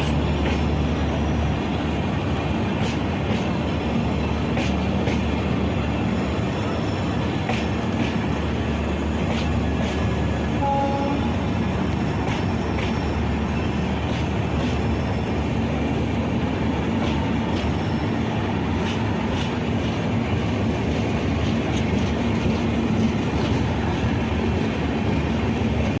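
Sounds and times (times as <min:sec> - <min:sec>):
train wheels rumbling on rail: 0:00.0 - 0:26.0.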